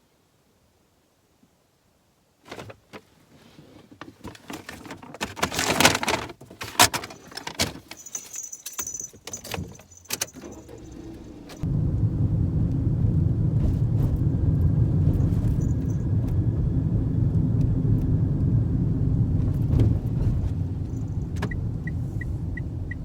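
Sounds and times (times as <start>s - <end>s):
keys jangling: 7.0s - 11.1s
low car rumble: 9.9s - 23.0s.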